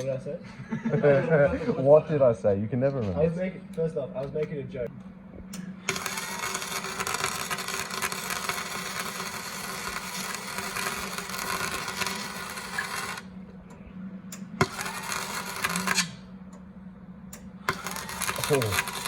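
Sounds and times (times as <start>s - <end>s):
steady low hum: 0.0s - 19.0s
welder arc crackling and hissing: 5.5s - 13.3s, 14.3s - 16.2s, 17.3s - 19.0s.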